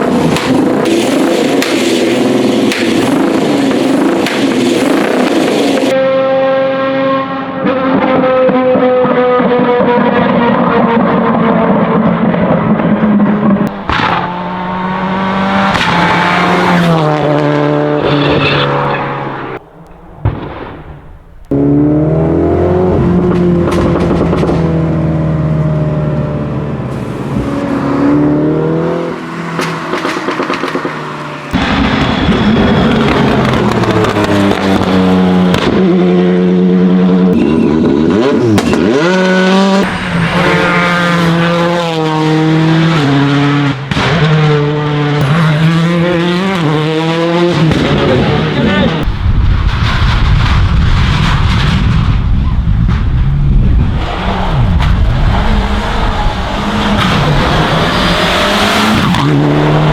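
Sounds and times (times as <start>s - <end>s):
exhaust pops and bangs: 0.0s - 5.9s, 13.5s - 14.4s, 19.9s - 21.6s, 23.2s - 24.8s, 29.5s - 36.0s, 37.8s - 39.0s, 43.9s - 44.4s, 47.5s - 55.9s, 56.8s - 57.6s
race car engines revving: 0.0s - 59.9s.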